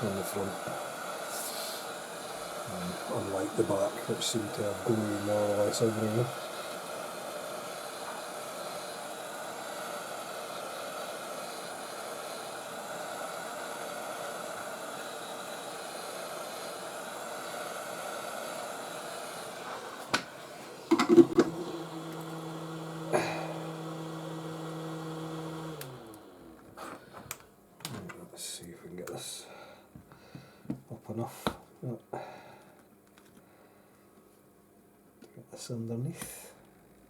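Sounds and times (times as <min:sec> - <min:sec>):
heat gun blowing air: 0:00.0 - 0:27.3.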